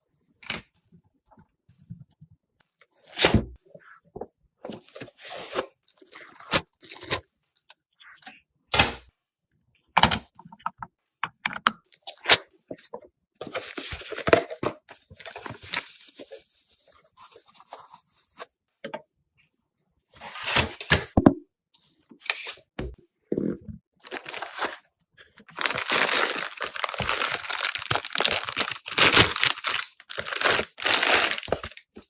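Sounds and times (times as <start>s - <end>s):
packaging scraping and rustling: 24.0s - 24.8s, 25.4s - 31.8s.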